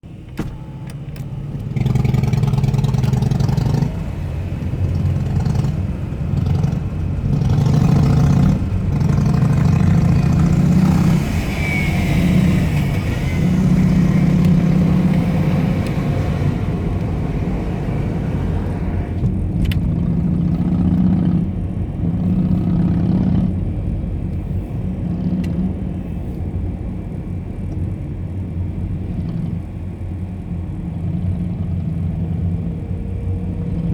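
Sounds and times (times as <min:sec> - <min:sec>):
motorcycle engine revving: 0:01.6 - 0:19.2, 0:19.8 - 0:23.6.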